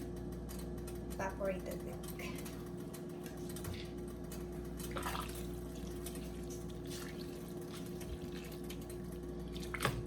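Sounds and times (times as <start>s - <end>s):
steady hum: 0.0s - 10.0s
liquid splashing and dripping: 4.8s - 10.0s.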